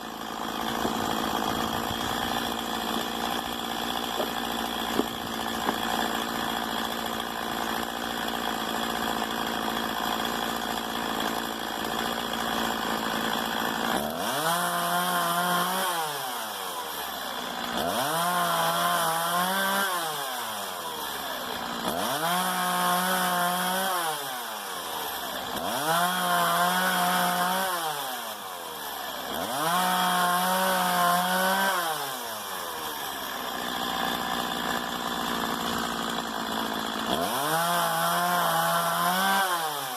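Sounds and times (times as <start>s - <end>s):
chainsaw idling and revving: 0.0s - 39.9s.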